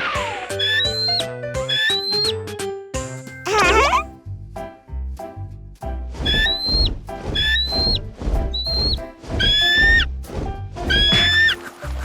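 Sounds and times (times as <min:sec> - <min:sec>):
wobbling sound effect: 0:03.5 - 0:04.0.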